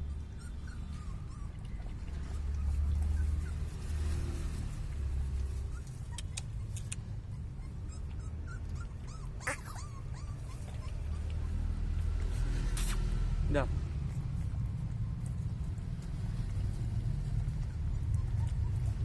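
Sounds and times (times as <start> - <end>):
puppies whimpering and yipping: 0.0 - 12.4, 17.4 - 19.0
street traffic rumble: 0.0 - 19.0.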